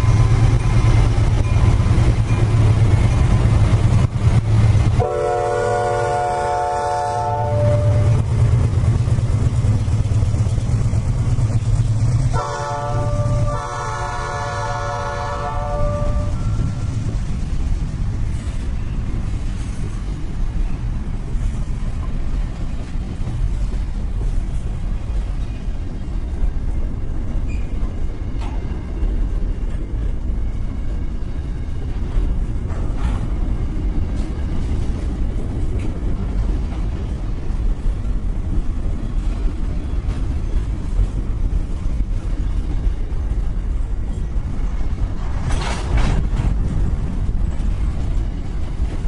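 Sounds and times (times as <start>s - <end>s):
locomotive air horn: 5.0s - 8.2s, 12.3s - 16.6s.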